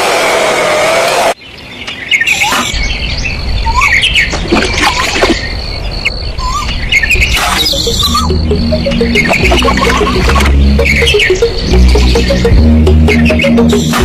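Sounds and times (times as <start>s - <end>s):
birds chirping: 1.4s - 14.0s.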